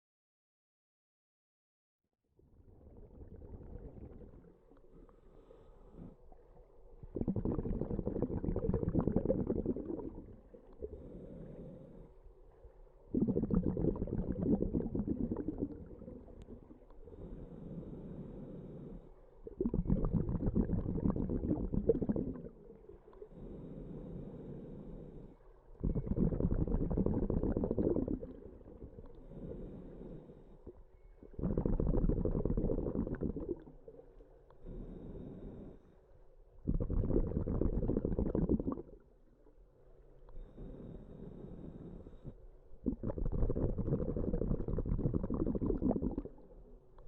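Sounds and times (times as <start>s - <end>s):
bubbling exhales underwater: 2.6s - 5.1s, 7.0s - 11.3s, 13.1s - 17.3s, 19.4s - 23.4s, 25.8s - 29.7s, 30.6s - 34.1s, 36.6s - 39.1s, 42.2s - 46.6s
diver inhaling through regulator: 3.4s - 6.3s, 7.1s - 12.2s, 13.1s - 39.1s, 40.4s - 46.5s.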